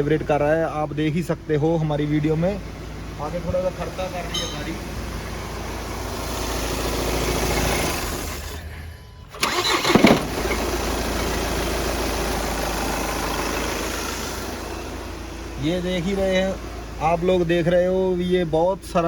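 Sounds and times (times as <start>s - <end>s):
engine rattling on starting: 0.0s - 8.7s, 9.3s - 17.9s
car engine running with a knock: 2.6s - 8.5s, 9.9s - 15.6s.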